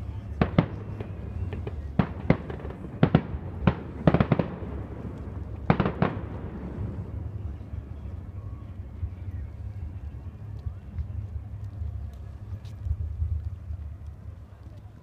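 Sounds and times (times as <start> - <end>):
low background noise: 0.0 - 15.0
fireworks bangs: 0.3 - 7.4.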